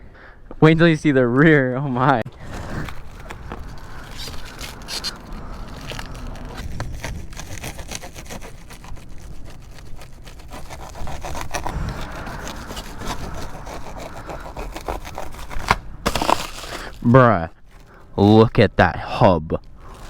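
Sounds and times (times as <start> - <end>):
low rumble: 2.2 - 18.0
packaging rustling: 2.3 - 18.1, 19.6 - 20.0.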